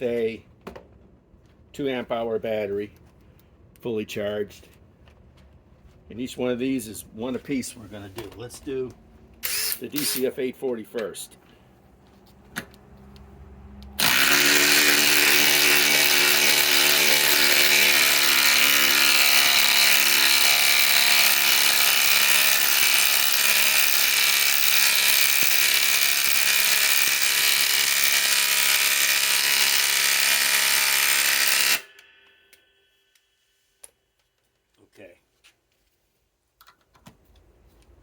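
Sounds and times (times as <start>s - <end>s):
impact driver rattling: 14.0s - 31.9s.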